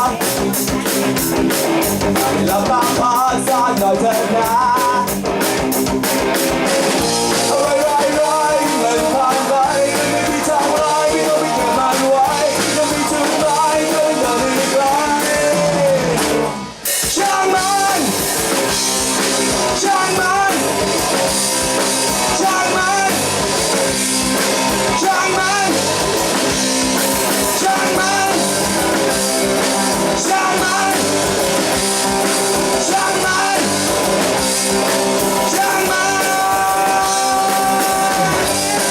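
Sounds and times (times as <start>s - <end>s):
rock band playing live: 0.0s - 38.9s.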